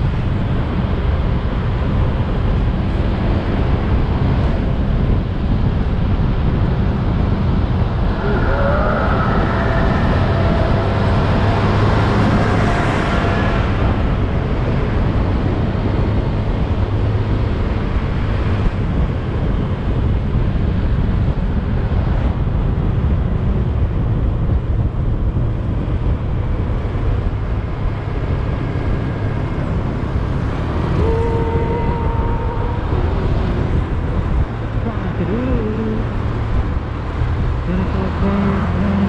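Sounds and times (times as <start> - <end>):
wind noise: 0.0 - 39.0
motorcycle engine: 6.9 - 18.8.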